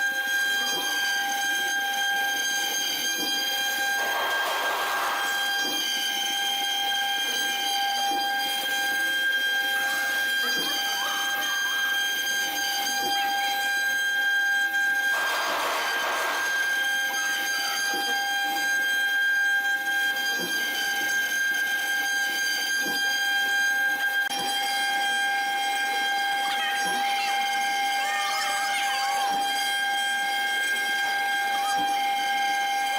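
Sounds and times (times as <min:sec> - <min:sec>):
wood-carving router whine: 0:00.0 - 0:32.9
rushing cutting noise: 0:15.1 - 0:16.9.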